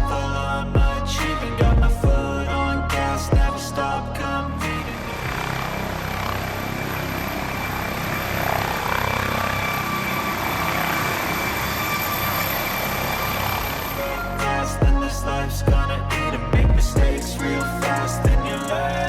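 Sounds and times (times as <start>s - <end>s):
helicopter rotor chop and engine: 5.0s - 14.0s.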